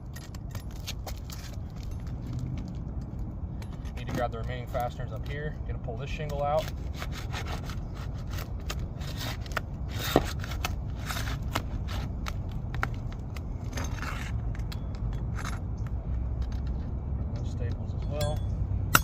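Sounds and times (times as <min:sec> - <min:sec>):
roof shingle tearing and scraping: 0:00.0 - 0:02.4, 0:06.2 - 0:14.5
sharp ringing click: 0:18.0 - 0:19.0.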